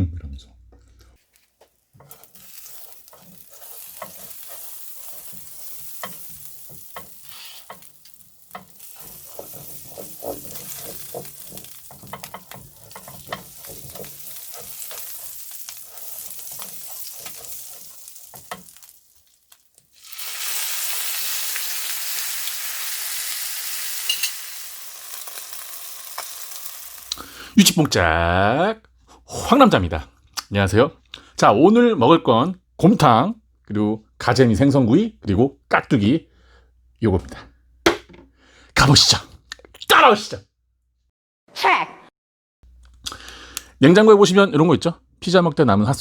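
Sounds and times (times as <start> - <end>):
food sizzling in a pan: 1.2 - 27.7.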